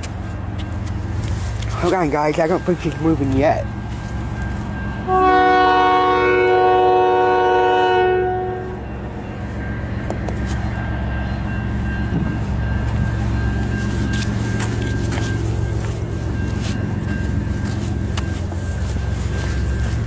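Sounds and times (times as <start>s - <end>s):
locomotive engine rumbling: 0.0s - 20.0s
locomotive air horn chord: 5.0s - 8.9s.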